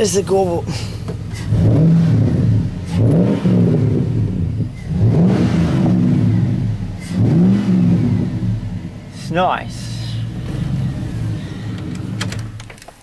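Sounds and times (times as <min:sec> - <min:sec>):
truck engine revving: 0:00.0 - 0:12.7.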